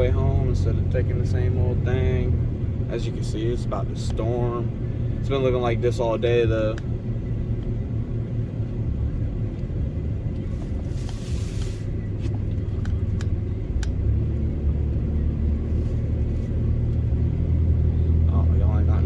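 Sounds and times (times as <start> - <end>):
truck engine and road noise: 0.0 - 19.0
brief hiss: 10.6 - 12.0.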